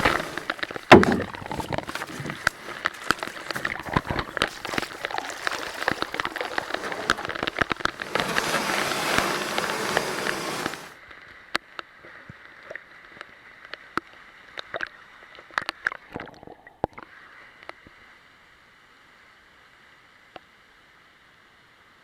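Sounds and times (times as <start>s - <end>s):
water splashes and drips: 0.0s - 10.9s
loud rushing water: 0.0s - 11.0s
faint steady hiss: 0.0s - 15.4s.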